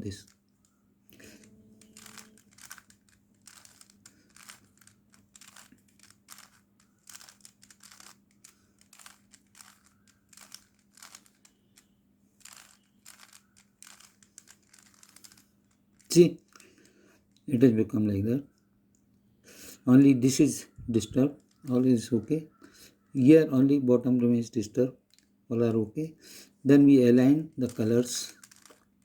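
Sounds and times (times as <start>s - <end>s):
puzzle cube clicks and rattles: 0.0s - 17.5s, 21.0s - 21.9s, 27.3s - 29.0s.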